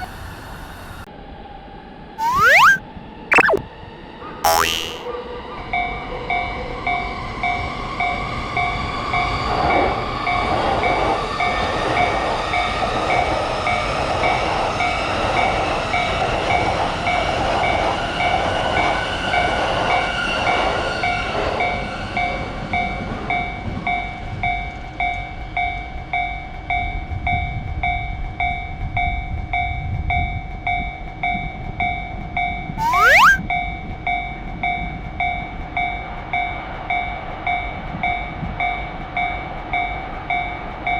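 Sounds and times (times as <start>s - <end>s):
sharp rising glide effect: 2.2s - 3.6s, 32.8s - 33.4s.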